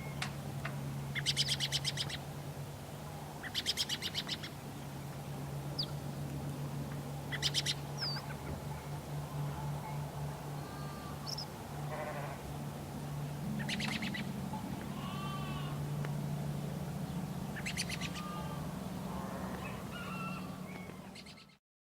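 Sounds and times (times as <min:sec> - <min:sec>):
steady low hum: 0:00.0 - 0:21.6
birds chirping: 0:03.4 - 0:06.0, 0:07.3 - 0:15.9, 0:16.6 - 0:21.6
sheep bleating: 0:10.6 - 0:12.4, 0:14.9 - 0:15.8, 0:18.1 - 0:20.5.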